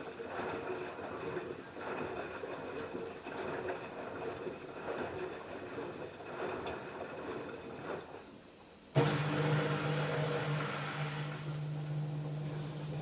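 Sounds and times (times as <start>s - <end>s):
washing machine sloshing laundry: 9.0s - 13.0s.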